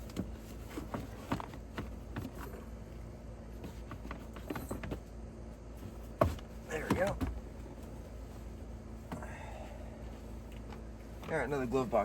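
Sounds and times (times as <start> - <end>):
plastic glove box clicks and knocks: 6.2 - 7.5.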